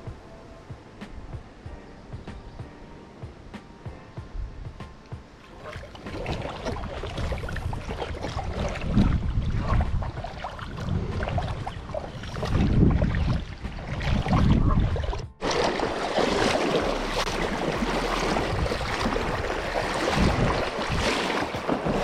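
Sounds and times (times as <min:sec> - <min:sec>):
wind rumbling on microphone: 0:00.0 - 0:22.0
water sloshing from wading: 0:05.1 - 0:22.0.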